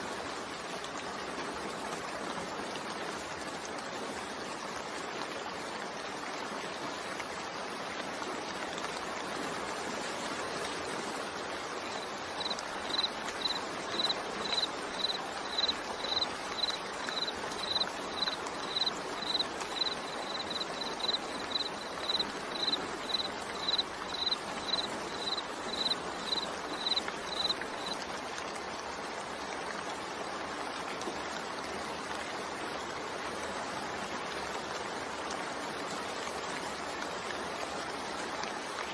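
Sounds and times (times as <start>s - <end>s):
steady rain: 0.0s - 38.9s.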